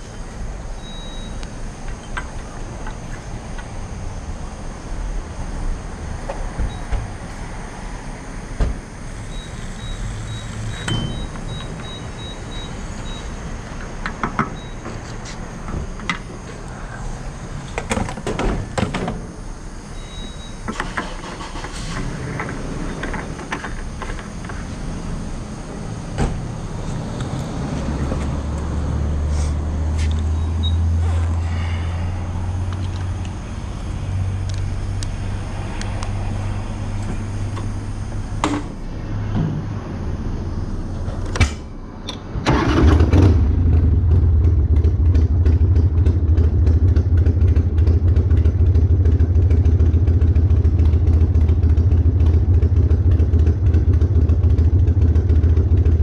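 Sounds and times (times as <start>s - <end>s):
wind and road noise: 0.0s - 56.0s
motorcycle engine running: 42.5s - 56.0s.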